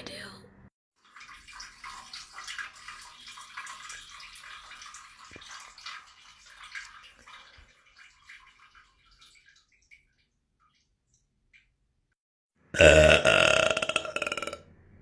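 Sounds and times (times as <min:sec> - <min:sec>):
water running and spattering: 0:01.0 - 0:11.7
water drips and splashes: 0:01.0 - 0:12.0.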